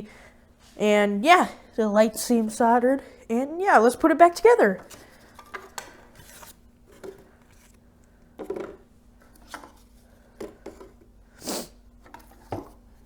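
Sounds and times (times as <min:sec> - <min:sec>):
faint steady hum: 0:00.0 - 0:13.0
plastic casing clicks and rustles: 0:04.8 - 0:06.4.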